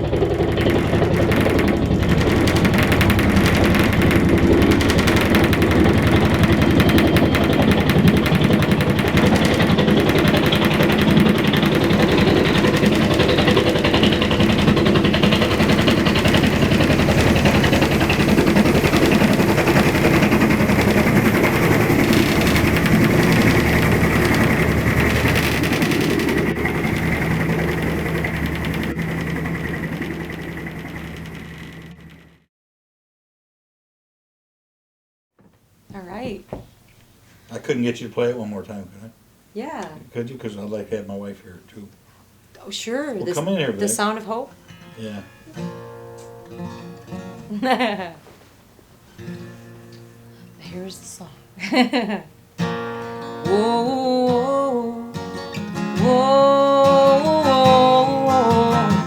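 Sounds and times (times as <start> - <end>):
helicopter rotor blade slap: 0.0 - 32.5, 45.4 - 48.2, 55.5 - 59.0
turbine whine: 0.0 - 32.5.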